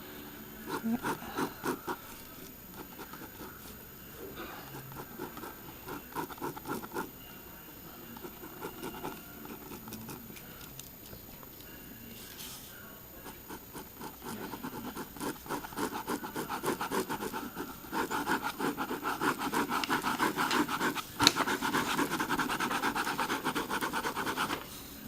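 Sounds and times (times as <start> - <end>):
pen scratching on paper: 0.6 - 3.8, 4.4 - 7.2, 8.1 - 10.4, 13.2 - 24.7.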